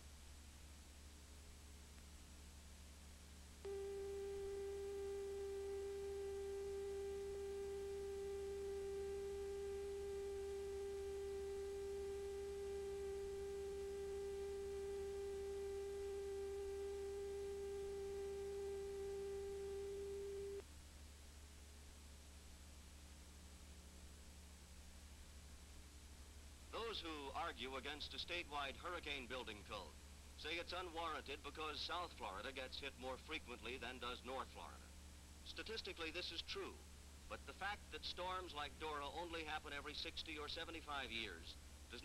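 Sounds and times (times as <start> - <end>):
low mains hum: 0.0 - 42.0
steady electronic test tone: 3.6 - 20.6.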